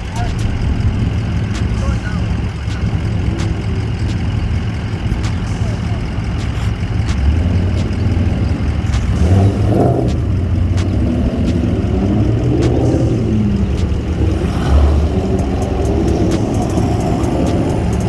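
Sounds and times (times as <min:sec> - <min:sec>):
cars driving past: 0:00.0 - 0:18.0
low rumble: 0:00.0 - 0:18.0.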